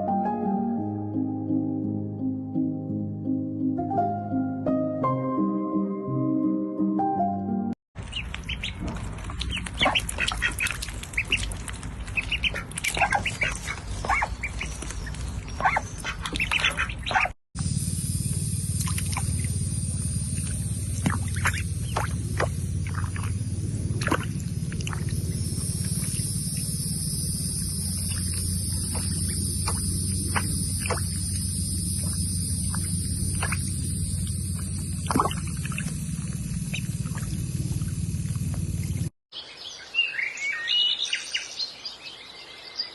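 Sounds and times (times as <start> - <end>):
birds chirping: 8.0 - 17.4, 19.0 - 42.9
low rumble: 8.0 - 39.1.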